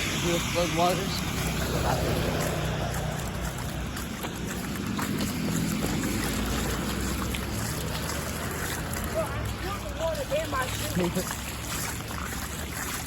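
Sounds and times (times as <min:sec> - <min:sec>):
footsteps wading through water: 0:00.0 - 0:13.0.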